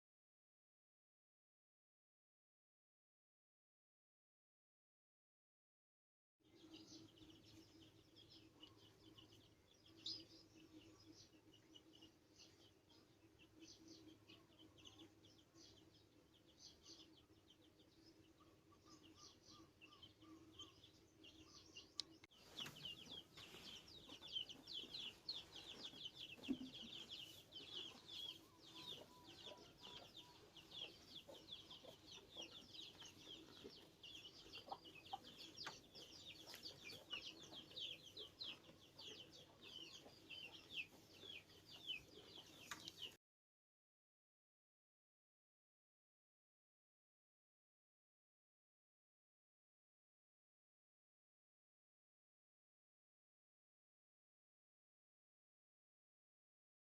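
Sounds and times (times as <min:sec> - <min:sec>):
flock of birds chirping: 0:06.5 - 0:43.2
poultry clucking: 0:06.6 - 0:43.2.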